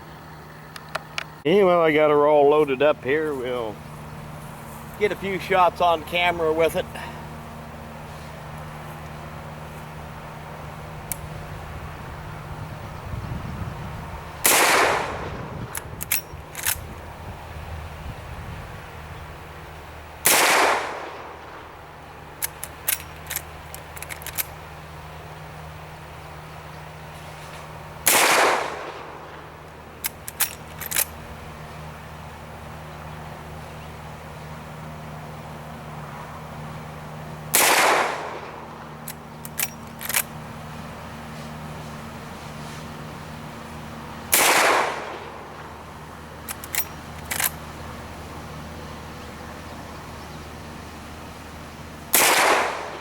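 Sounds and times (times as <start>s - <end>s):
rifle shot: 14.4s - 15.4s, 20.2s - 21.6s, 28.0s - 29.3s, 37.5s - 38.6s, 44.3s - 45.4s, 52.1s - 53.0s
rifle lever clicking: 15.8s - 16.8s, 22.4s - 24.5s, 30.0s - 31.1s, 39.0s - 40.3s, 46.5s - 47.6s.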